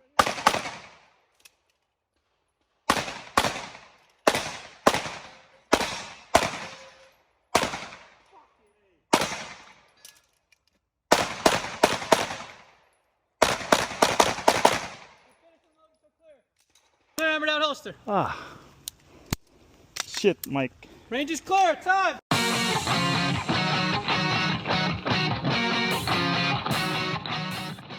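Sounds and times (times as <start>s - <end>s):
pistol shots: 0.0s - 1.1s, 2.9s - 8.3s, 9.1s - 9.9s, 11.1s - 12.8s, 13.4s - 15.2s.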